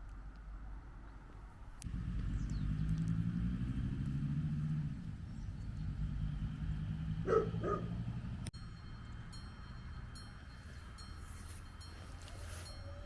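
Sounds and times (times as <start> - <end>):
vehicle motor humming: 1.7 - 13.0
dog barking: 7.2 - 8.0.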